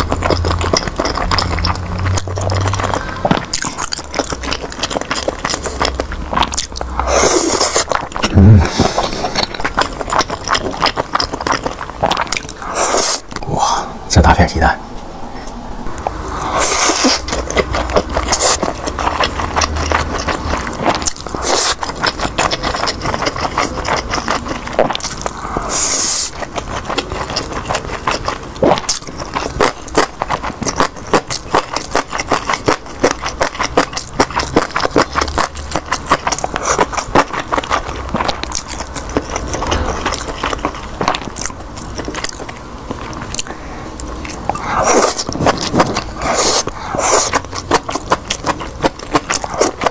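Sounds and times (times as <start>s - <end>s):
chewing and biting food: 0.0s - 13.4s, 15.9s - 49.9s.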